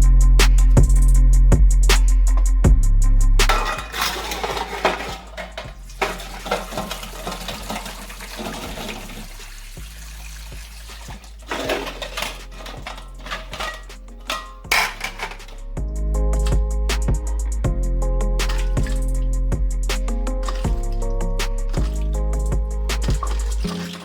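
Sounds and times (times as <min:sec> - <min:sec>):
dishware clinking: 0:03.5 - 0:08.7, 0:11.5 - 0:15.6
water sloshing in a bowl: 0:03.5 - 0:15.5, 0:18.4 - 0:19.2, 0:20.4 - 0:21.1, 0:21.7 - 0:22.2, 0:23.0 - 0:24.0.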